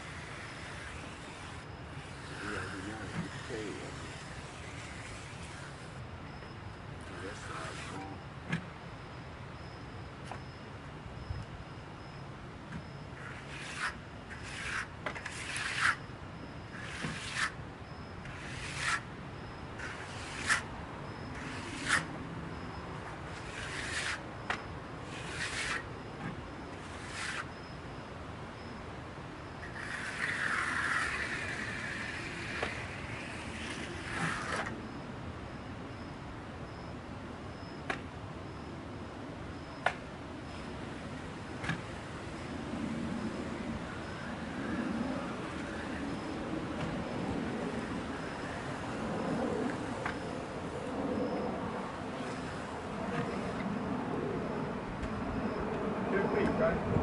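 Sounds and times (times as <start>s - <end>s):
hand tool scraping concrete: 0.0s - 6.0s, 7.2s - 8.1s, 13.2s - 16.0s, 16.8s - 17.6s, 18.2s - 19.1s, 19.8s - 20.7s, 21.3s - 22.1s, 23.3s - 25.9s, 26.8s - 27.5s, 29.6s - 34.7s.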